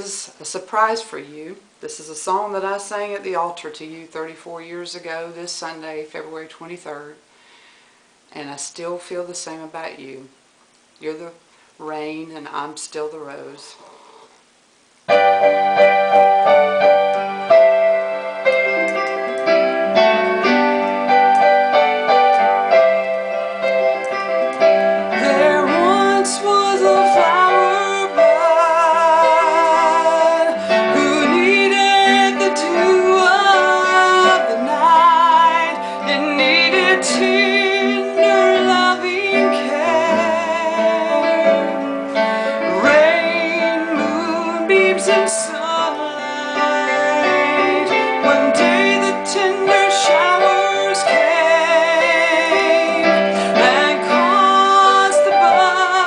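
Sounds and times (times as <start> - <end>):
piano slow love song: 15.1 - 56.0.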